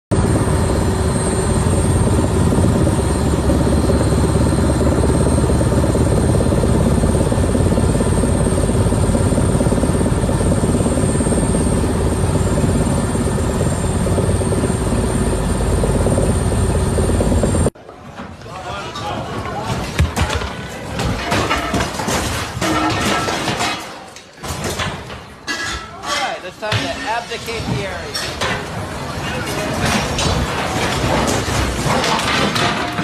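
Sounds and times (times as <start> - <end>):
helicopter rotor and engine: 0.1 - 17.8.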